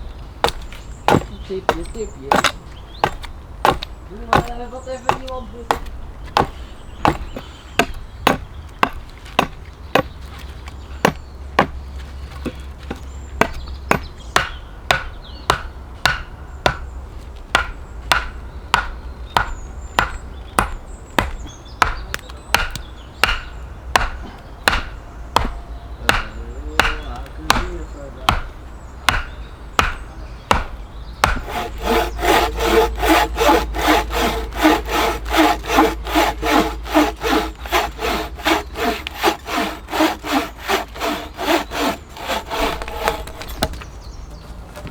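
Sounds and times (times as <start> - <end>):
hand saw cutting wood: 0.4 - 11.7, 26.1 - 28.4, 31.2 - 43.8
chopping into wood: 0.4 - 16.9, 17.5 - 43.9.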